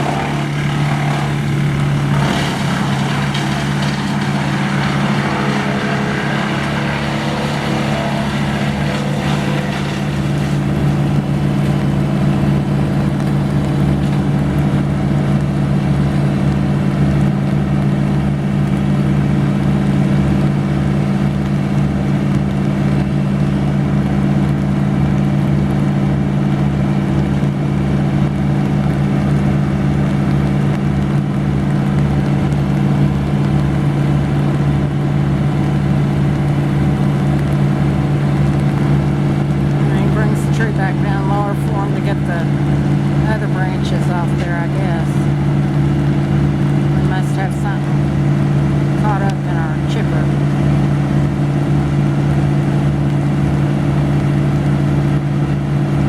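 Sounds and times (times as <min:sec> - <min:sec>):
large engine throbbing: 0:00.0 - 0:56.0.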